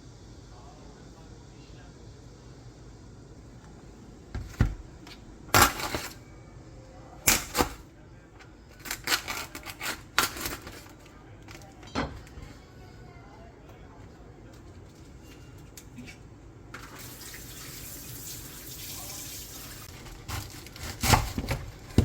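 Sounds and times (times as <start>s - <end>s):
dishes and utensils clattering: 5.6s - 6.2s, 11.8s - 12.5s.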